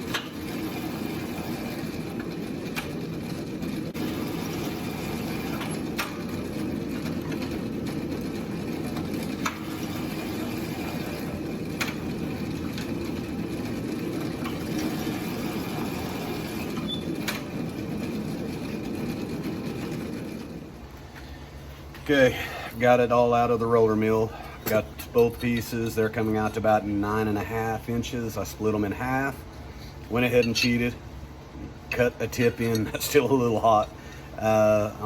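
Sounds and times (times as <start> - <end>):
roller mill running: 0.0 - 35.0
sharp clicks and knocks: 5.5 - 9.9, 11.6 - 15.0, 16.6 - 18.2.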